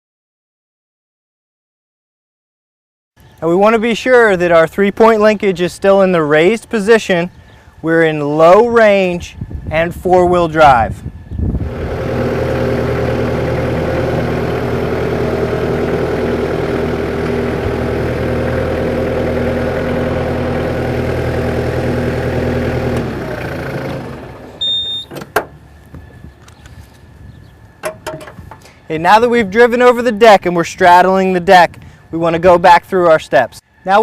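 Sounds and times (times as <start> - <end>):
tractor diesel engine running: 11.6 - 30.0.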